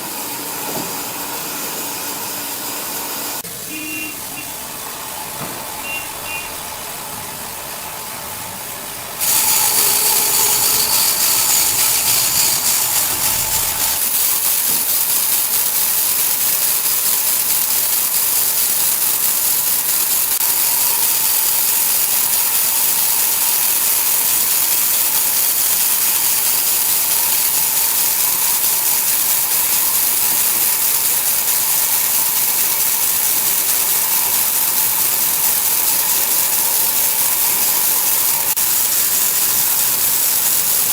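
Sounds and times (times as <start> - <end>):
sawmill saw cutting log: 0.0 - 14.8.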